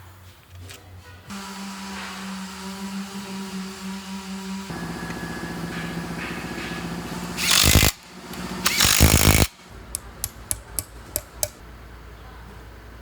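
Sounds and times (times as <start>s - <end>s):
power tool bursts: 1.3s - 9.7s
sharp clicks: 7.4s - 11.6s.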